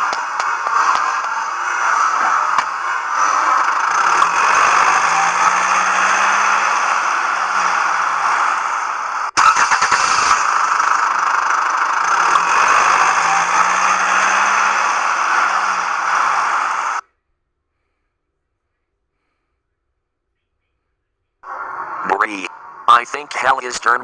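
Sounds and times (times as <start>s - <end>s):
steady rushing noise: 0.0s - 9.4s
crackling: 0.0s - 17.0s
van engine running: 0.0s - 17.0s, 21.4s - 24.0s.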